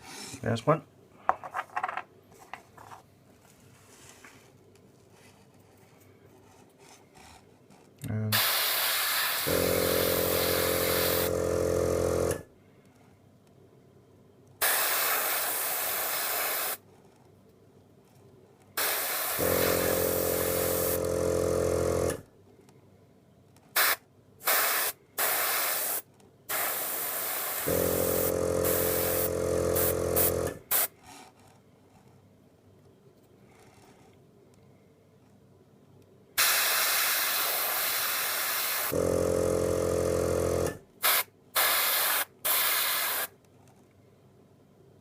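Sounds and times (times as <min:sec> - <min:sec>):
airbrush hissing: 0:08.4 - 0:11.4, 0:14.6 - 0:16.8, 0:18.8 - 0:21.1, 0:23.8 - 0:30.9, 0:36.4 - 0:39.0, 0:41.0 - 0:43.3
compressor motor humming: 0:08.4 - 0:12.4, 0:18.8 - 0:22.2, 0:27.5 - 0:30.8, 0:38.6 - 0:40.8.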